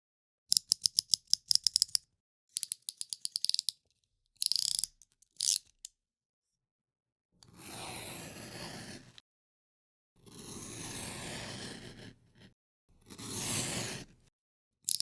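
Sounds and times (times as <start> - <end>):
utility knife slider clicking: 0.5 - 2.0, 2.6 - 3.8, 4.4 - 5.9.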